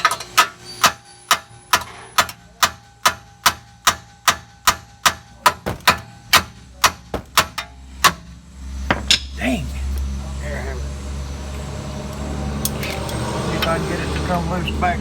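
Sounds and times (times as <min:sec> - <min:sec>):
hammer striking metal bolt: 0:00.0 - 0:08.3, 0:08.9 - 0:09.4.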